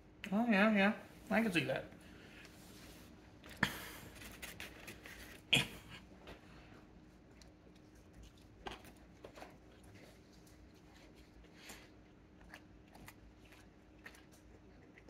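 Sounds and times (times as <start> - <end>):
person chewing crunchy crust: 3.4 - 15.0.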